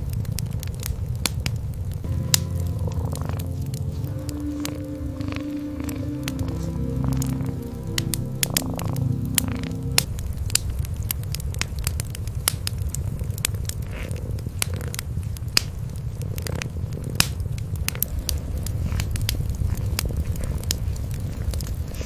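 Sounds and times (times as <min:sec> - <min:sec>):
sharp fire pops: 0:00.0 - 0:22.0
wood fire crackling: 0:00.0 - 0:22.0
low steady rumble: 0:02.0 - 0:12.4.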